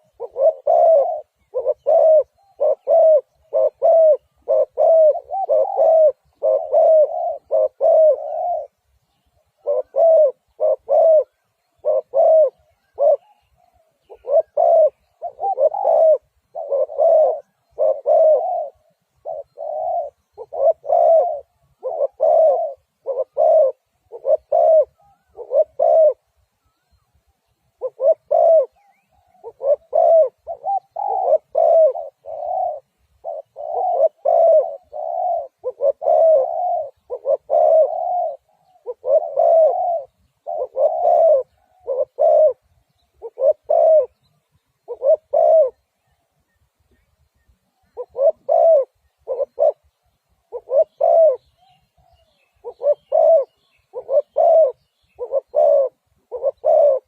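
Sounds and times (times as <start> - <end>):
dove cooing: 0.0 - 57.0.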